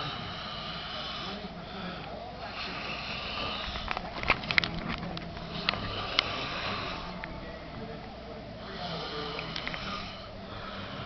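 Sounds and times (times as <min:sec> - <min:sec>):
man snoring: 0:00.0 - 0:01.6, 0:05.5 - 0:07.2, 0:08.6 - 0:11.0.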